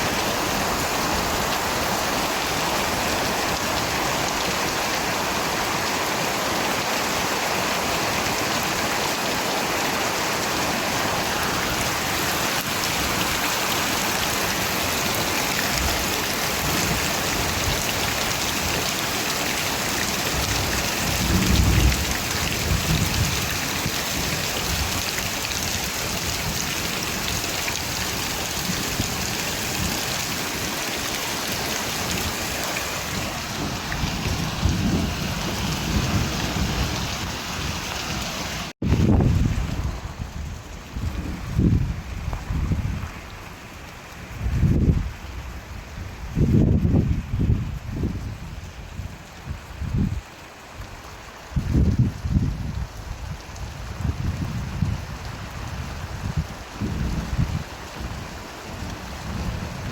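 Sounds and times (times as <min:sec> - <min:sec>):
steady rain falling: 0:00.0 - 0:59.9
low rumble of thunder: 0:20.4 - 0:25.0.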